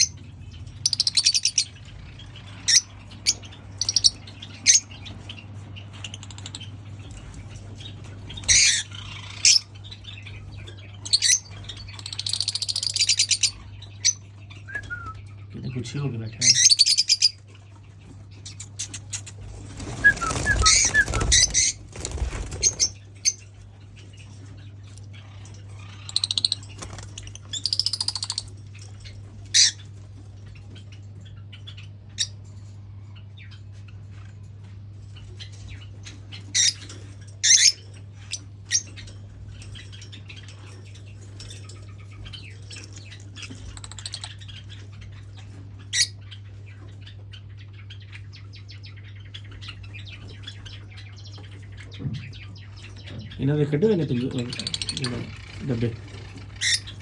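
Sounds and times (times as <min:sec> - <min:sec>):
lovebirds chirping and squawking: 0:00.0 - 0:57.0
wings rustling and flapping: 0:17.6 - 0:25.0, 0:26.5 - 0:30.4.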